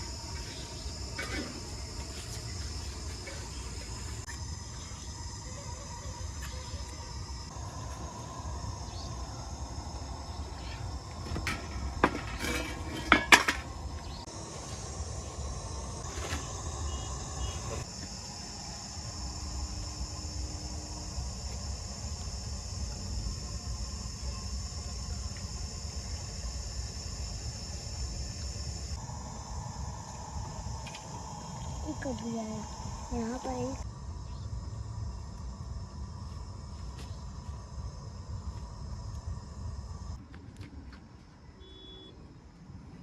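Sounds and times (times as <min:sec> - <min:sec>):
insects trilling: 0:00.0 - 0:40.2
low outdoor hum: 0:00.0 - 0:43.0
metal kitchenware clinking: 0:11.3 - 0:13.9.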